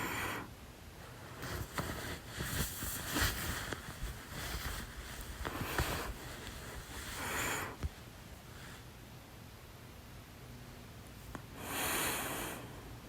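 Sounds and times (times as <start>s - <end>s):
person breathing: 0.0s - 0.5s, 5.4s - 7.9s, 11.5s - 13.0s.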